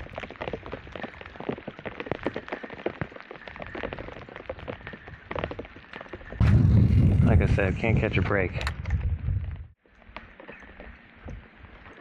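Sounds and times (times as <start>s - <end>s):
heavy rain falling: 0.0s - 8.1s.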